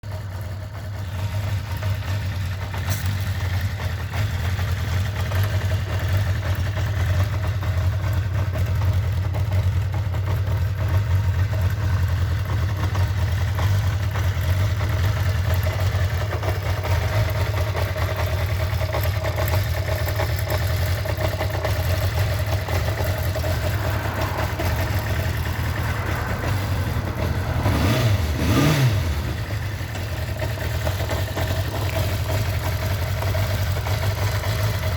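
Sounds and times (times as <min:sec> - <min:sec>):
motorcycle engine idling: 0:00.0 - 0:34.9
motorcycle engine revving: 0:00.0 - 0:34.9.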